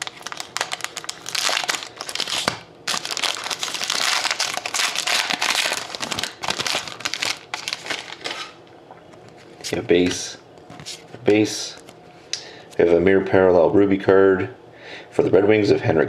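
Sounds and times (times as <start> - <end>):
wrapper tearing and crinkling: 0.0 - 8.6.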